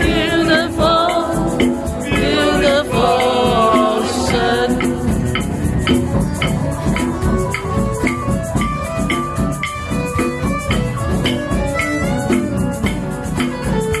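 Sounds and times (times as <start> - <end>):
instrumental music over steady beat: 0.0 - 14.0.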